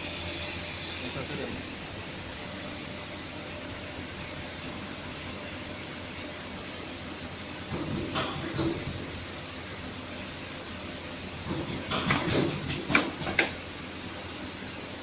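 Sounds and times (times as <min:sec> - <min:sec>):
short clacks and knocks: 0:11.5 - 0:13.6.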